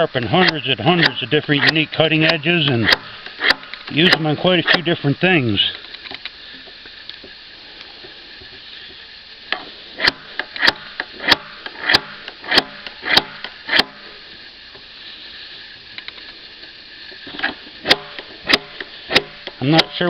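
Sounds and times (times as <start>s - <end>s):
sharpener scraping chainsaw bar: 0.2s - 5.0s, 10.0s - 14.1s, 17.3s - 20.0s.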